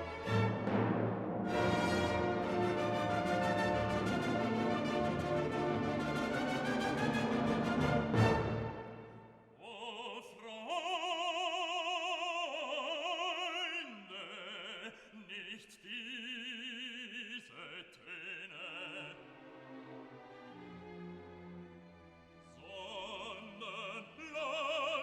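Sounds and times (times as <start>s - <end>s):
orchestral music: 0.0s - 9.4s, 19.1s - 24.0s
operatic singing: 0.0s - 20.8s, 22.4s - 25.0s.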